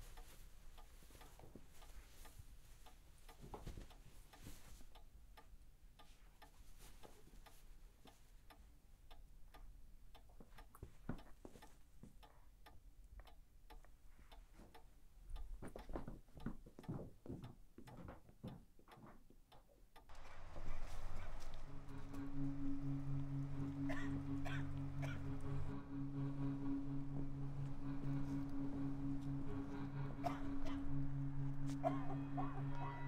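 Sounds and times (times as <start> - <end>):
clock ticking: 0.0 - 33.0.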